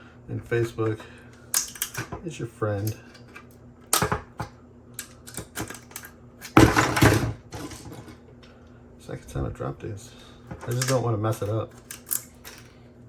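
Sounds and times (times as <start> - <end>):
plastic parts clicking: 1.6 - 2.2, 5.0 - 6.6, 10.5 - 12.7
plastic parts dropped clattering: 5.3 - 8.2, 10.5 - 12.7.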